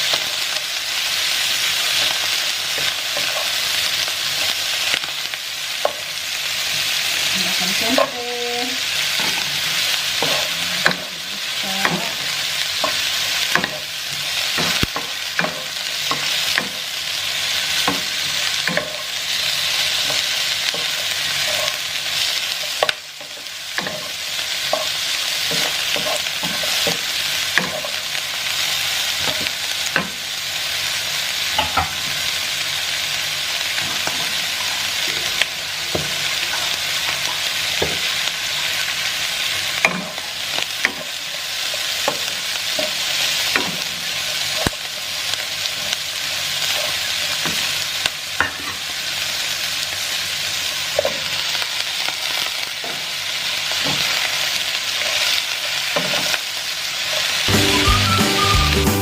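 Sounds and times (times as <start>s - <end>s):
vegetables sizzling in a hot pan: 0.0s - 59.0s.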